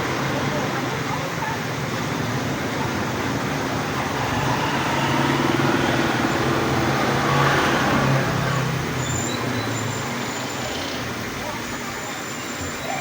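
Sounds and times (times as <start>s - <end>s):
vehicle engine passing by: 2.0s - 11.3s.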